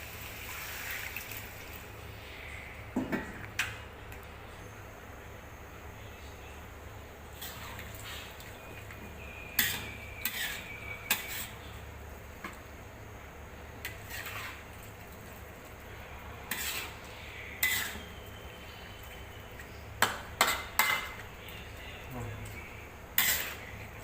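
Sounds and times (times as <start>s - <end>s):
metal spatula scraping a pan: 7.3s - 8.4s, 9.3s - 11.7s, 13.8s - 14.7s, 16.4s - 18.4s, 20.0s - 21.2s, 23.1s - 23.9s.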